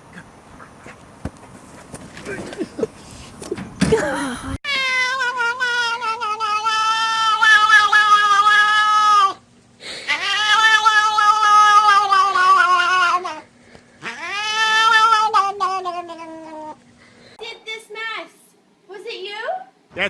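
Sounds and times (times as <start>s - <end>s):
cat yowling: 4.7s - 13.4s, 14.0s - 16.8s.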